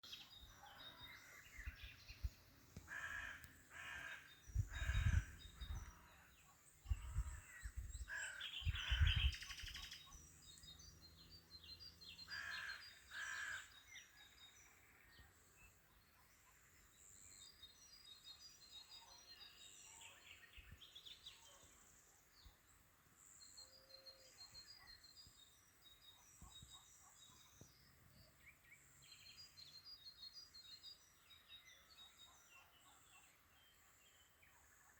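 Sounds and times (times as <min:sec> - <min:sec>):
small birds chirping: 0:00.0 - 0:34.9
birds cawing: 0:02.9 - 0:05.4, 0:12.3 - 0:13.7.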